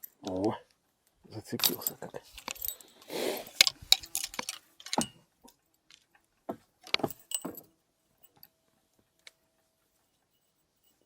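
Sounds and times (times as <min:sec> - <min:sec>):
fishing tackle clicking and clinking: 0:01.5 - 0:06.1, 0:06.8 - 0:08.5.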